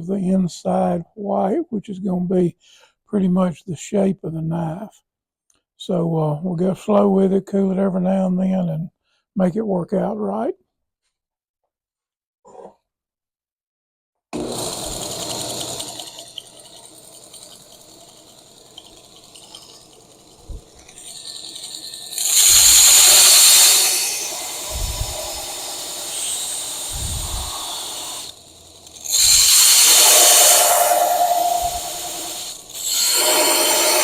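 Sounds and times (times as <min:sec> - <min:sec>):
belt sander grinding steel: 0:14.4 - 0:34.0.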